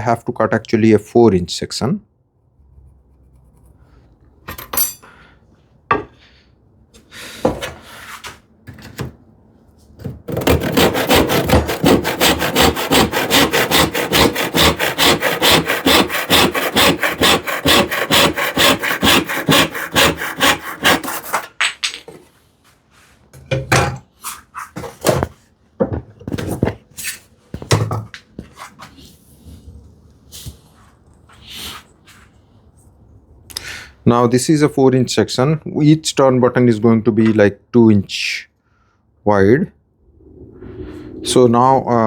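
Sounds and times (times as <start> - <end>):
hand saw cutting wood: 10.3 - 21.5.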